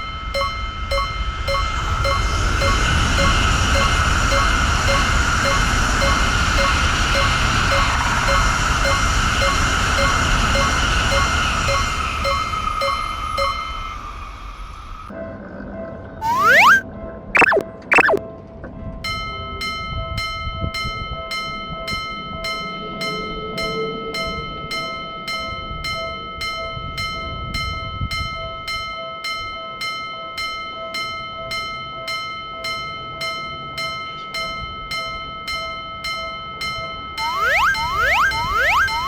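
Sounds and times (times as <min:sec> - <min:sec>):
railroad crossing bell ringing: 0:00.0 - 0:14.1.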